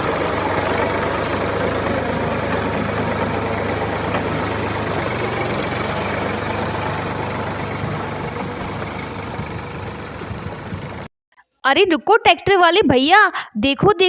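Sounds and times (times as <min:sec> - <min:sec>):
tractor engine running: 0:00.0 - 0:11.1.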